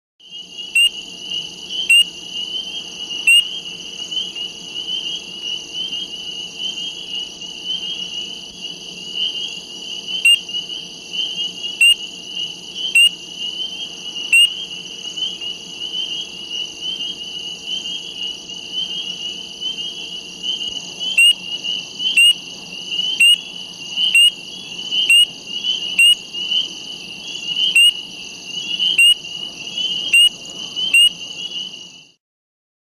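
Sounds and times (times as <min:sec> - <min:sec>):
chorus of frogs peeping: 0:00.2 - 0:32.2
single frog peeps: 0:00.6 - 0:01.0, 0:01.7 - 0:04.3, 0:10.1 - 0:10.6, 0:11.2 - 0:12.0, 0:12.8 - 0:16.3, 0:19.6 - 0:26.7, 0:27.3 - 0:28.0, 0:28.6 - 0:31.7.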